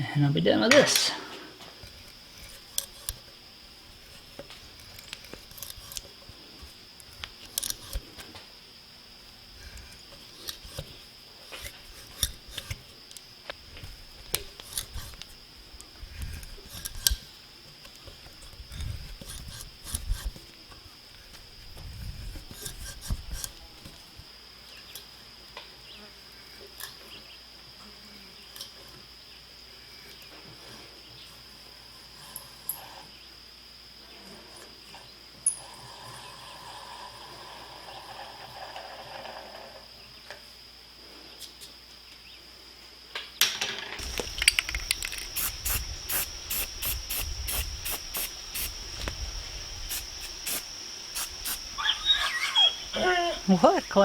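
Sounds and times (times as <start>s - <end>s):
high insect drone: 0.0s - 54.0s
sharp clicks: 44.0s - 51.9s
faint high whine: 44.0s - 54.0s.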